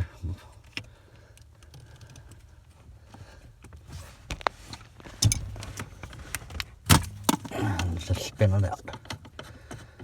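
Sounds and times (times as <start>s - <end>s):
handling noise: 3.7s - 8.0s
sharp clicks and knocks: 5.1s - 7.5s.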